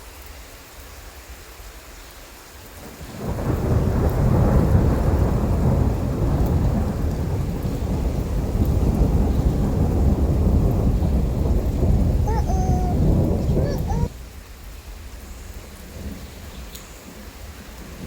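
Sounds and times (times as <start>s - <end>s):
rain hiss: 0.0s - 18.0s
deep thunder rumble: 3.1s - 14.2s.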